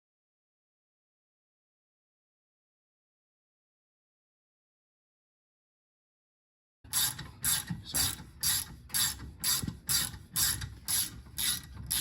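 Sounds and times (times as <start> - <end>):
ratchet wrench clicking: 6.9 - 12.0.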